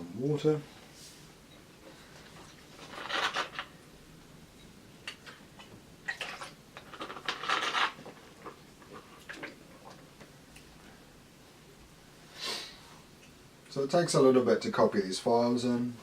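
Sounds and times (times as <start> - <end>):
small objects clinking and rustling: 2.3 - 3.7, 6.1 - 9.4.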